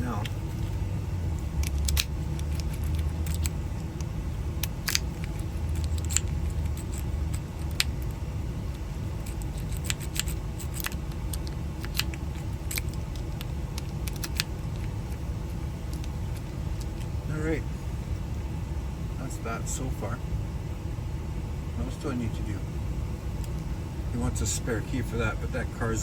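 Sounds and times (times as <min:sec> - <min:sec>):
steady low rumble: 0:00.0 - 0:26.0
metallic clicks of keys and lock parts: 0:01.6 - 0:03.5.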